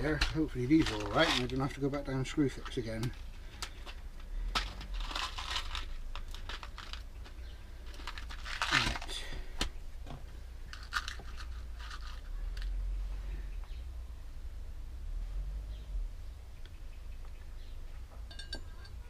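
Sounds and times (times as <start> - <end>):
packaging rustling and crinkling: 0.0 - 9.7, 10.7 - 12.8.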